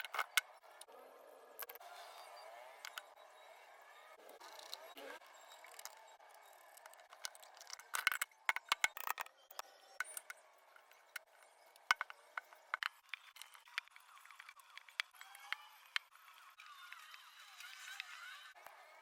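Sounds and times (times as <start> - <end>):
sharp clicks and crackles: 0.0 - 1.0, 5.6 - 18.8.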